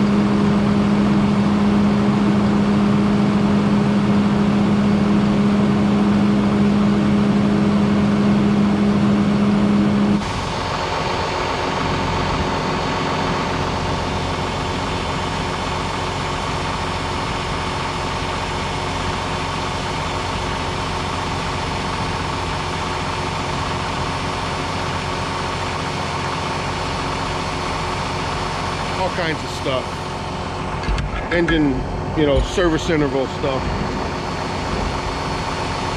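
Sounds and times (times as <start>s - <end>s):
tractor engine idling: 10.2s - 35.9s.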